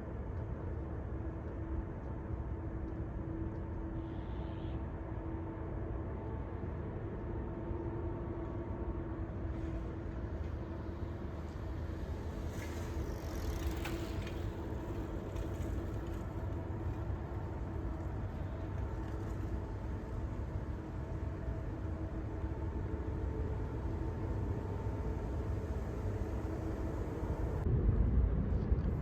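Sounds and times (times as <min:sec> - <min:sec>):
vehicle rumble: 0:08.4 - 0:29.0.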